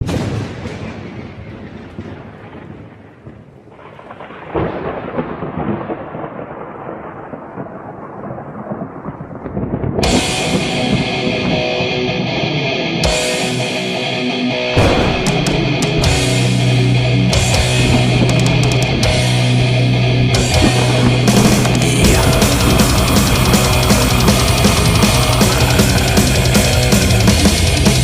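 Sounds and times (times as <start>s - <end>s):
rolling thunder: 0.0s - 11.6s, 14.8s - 28.0s
distorted guitar chords: 10.0s - 28.0s.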